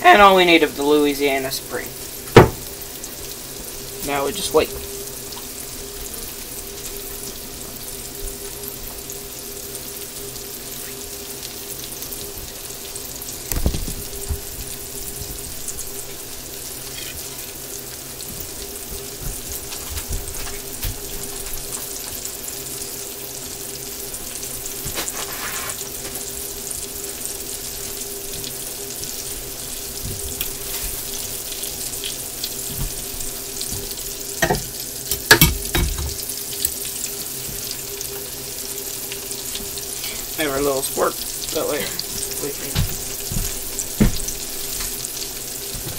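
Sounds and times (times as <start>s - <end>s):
meat sizzling in frying oil: 0.0s - 45.9s
sharp knocks: 2.3s - 2.7s.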